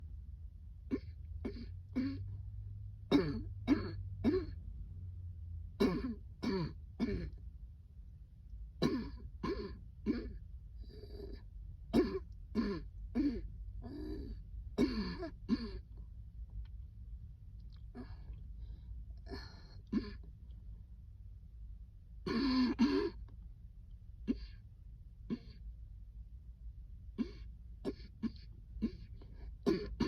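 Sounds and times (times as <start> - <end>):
person coughing: 0.9 - 2.3, 3.1 - 4.6, 5.8 - 7.4, 8.8 - 15.9, 19.2 - 20.3, 22.3 - 23.2, 24.3 - 24.6, 25.3 - 25.6, 27.2 - 30.0.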